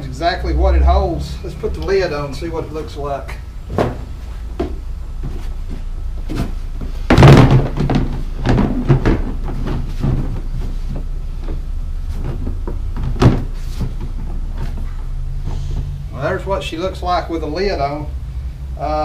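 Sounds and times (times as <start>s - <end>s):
plastic lid thunks and knocks: 3.7s - 4.0s, 7.1s - 10.4s, 12.3s - 13.5s.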